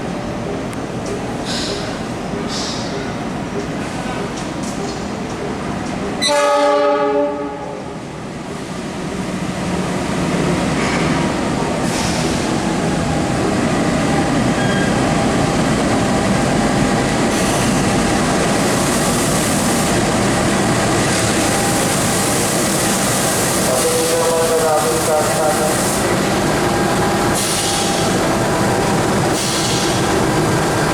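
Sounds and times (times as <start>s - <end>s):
locomotive horn blast: 6.2s - 7.9s.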